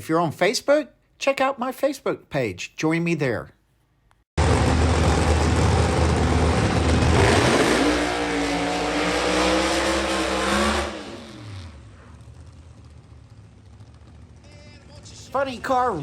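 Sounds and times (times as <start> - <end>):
drag racing engine at full throttle: 4.4 - 16.0.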